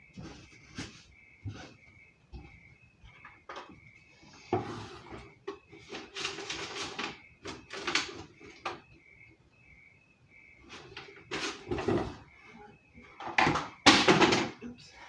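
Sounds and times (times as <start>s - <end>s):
crinkly rustling: 4.8s - 8.8s, 10.7s - 12.5s.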